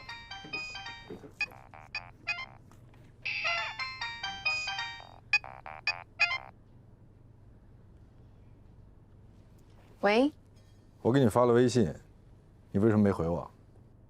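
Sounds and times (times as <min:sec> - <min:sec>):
phone ringtone melody: 0:00.0 - 0:06.5.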